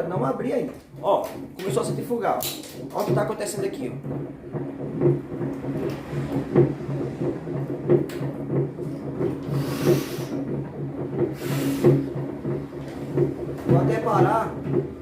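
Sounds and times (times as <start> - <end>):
washing machine drum knocking: 0.0 - 15.0
washing machine motor hum: 0.0 - 15.0.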